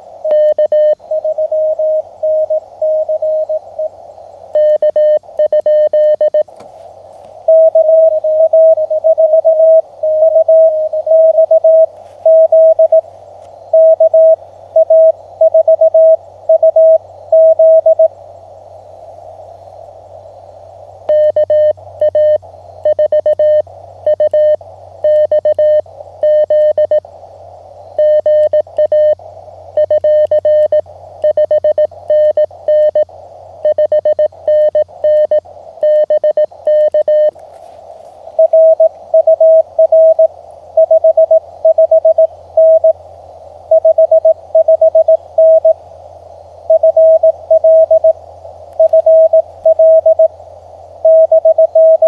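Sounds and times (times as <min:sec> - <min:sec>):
radio hiss: 0:00.0 - 0:52.0
morse code tone: 0:00.3 - 0:03.9, 0:04.6 - 0:06.4, 0:07.5 - 0:13.0, 0:13.7 - 0:18.1, 0:21.1 - 0:27.0, 0:28.0 - 0:29.2, 0:29.8 - 0:37.4, 0:38.4 - 0:43.0, 0:43.7 - 0:45.8, 0:46.7 - 0:48.2, 0:48.8 - 0:50.3, 0:51.0 - 0:52.0.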